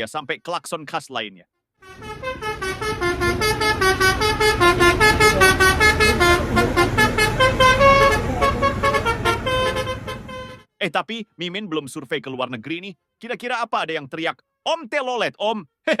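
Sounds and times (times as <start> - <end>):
multi-tone melodic bus horn: 1.8 - 10.7
bus rumble: 1.9 - 10.6
traffic: 1.9 - 10.6.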